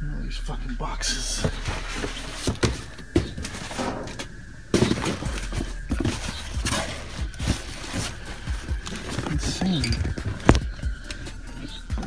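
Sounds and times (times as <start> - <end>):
cardboard boxes knocking and thudding: 1.4 - 12.0
cardboard rustling and scraping: 1.4 - 12.0.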